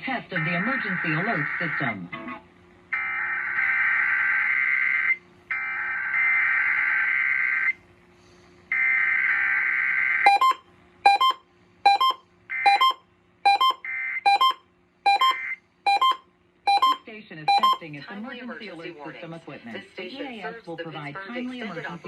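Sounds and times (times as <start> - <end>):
short stacked-tone beeps: 10.3 - 17.8.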